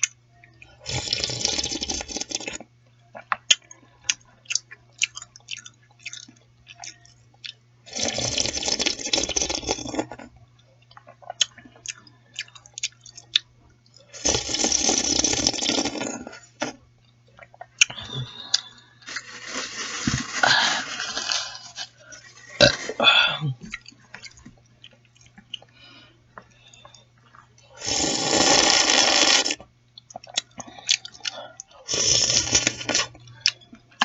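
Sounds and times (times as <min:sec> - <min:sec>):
slurping noodles and broth: 0:00.9 - 0:02.6, 0:07.9 - 0:10.2, 0:14.2 - 0:16.8, 0:19.1 - 0:23.0, 0:27.8 - 0:29.6, 0:31.9 - 0:33.2
wet chewing and lip smacks: 0:03.2 - 0:07.6, 0:23.7 - 0:27.5, 0:30.0 - 0:31.8.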